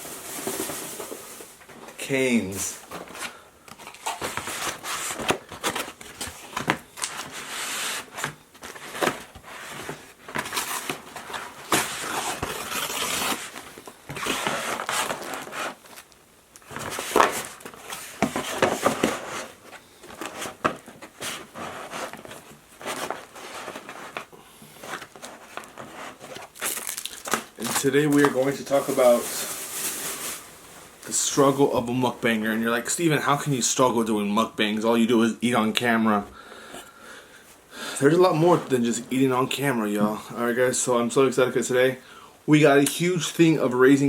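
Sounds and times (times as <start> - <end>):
paper and plastic crinkling: 0.0 - 32.4
packaging tearing: 10.4 - 17.7, 26.4 - 30.4.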